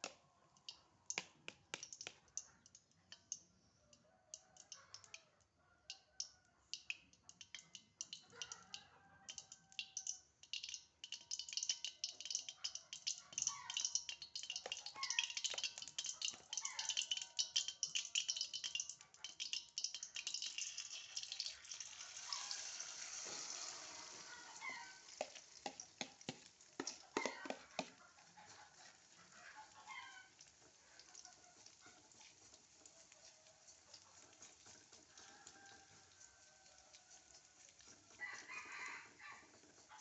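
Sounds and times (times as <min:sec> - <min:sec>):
utensil tapping pan: 0:00.0 - 0:03.4, 0:09.3 - 0:24.2, 0:25.0 - 0:28.0
food sizzling in oil: 0:09.3 - 0:28.0, 0:29.7 - 0:40.0.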